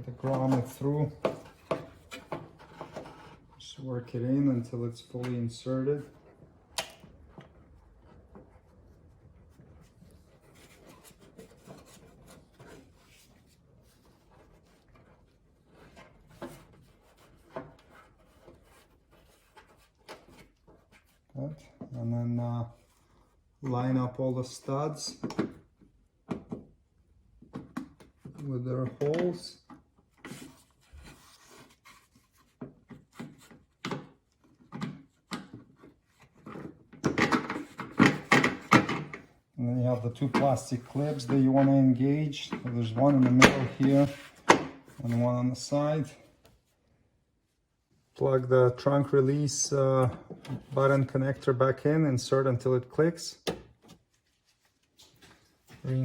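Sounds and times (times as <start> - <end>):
plastic trim knocking and scraping: 0.0 - 3.5, 40.1 - 45.1.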